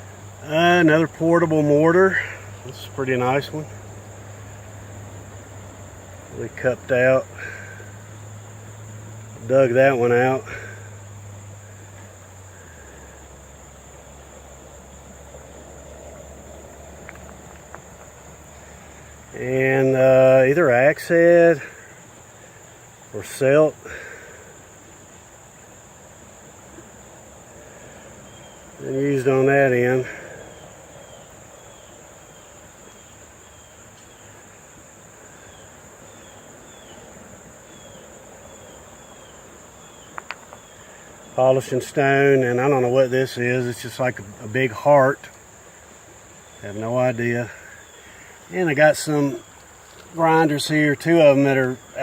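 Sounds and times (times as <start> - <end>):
insects trilling: 0.0 - 52.0
faint clicks: 17.0 - 18.2, 40.1 - 40.7.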